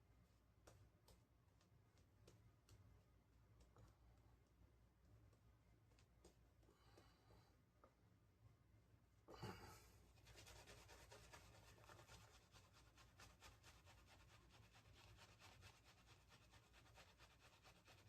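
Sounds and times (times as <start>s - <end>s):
shaving brush strokes on lather: 10.2s - 18.0s.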